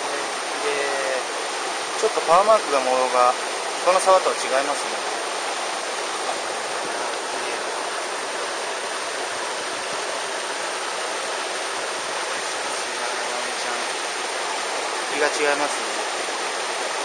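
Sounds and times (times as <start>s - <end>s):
stream rushing over rocks: 0.0s - 17.0s.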